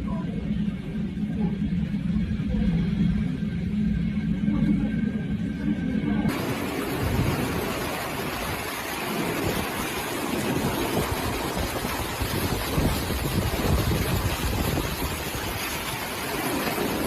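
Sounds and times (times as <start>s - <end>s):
surging water: 0.0s - 17.0s
wind buffeting microphone: 6.0s - 17.0s
wind rushing: 6.3s - 17.0s.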